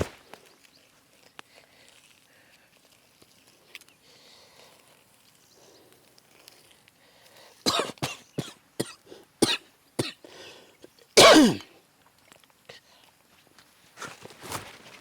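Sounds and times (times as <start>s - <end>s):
person coughing: 7.7s - 10.2s, 11.2s - 11.7s.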